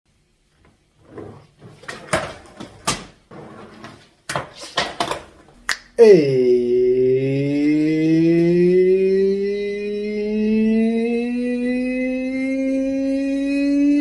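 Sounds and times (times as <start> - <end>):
held music with voice-like drone: 6.0 - 14.0.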